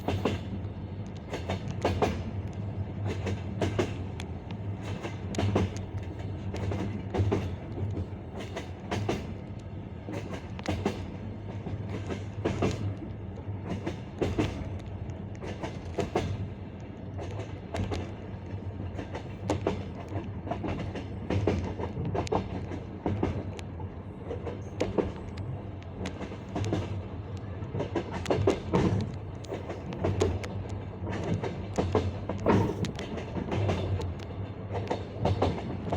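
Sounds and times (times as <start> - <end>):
train wheels clattering over rail joints: 0.0 - 0.6, 1.2 - 2.4, 3.0 - 9.4, 10.0 - 13.0, 13.6 - 14.8, 17.2 - 23.5, 27.7 - 35.9
train rolling rumble: 0.0 - 35.9.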